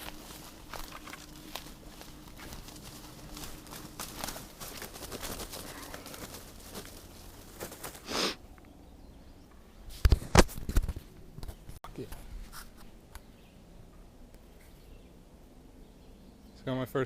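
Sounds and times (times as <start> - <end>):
rustling in dry leaves: 0.0 - 8.6
short hiss: 8.0 - 8.4.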